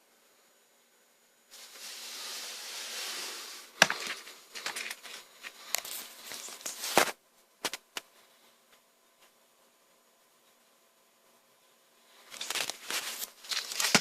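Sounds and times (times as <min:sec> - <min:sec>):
rustling hiss: 0:01.5 - 0:07.2.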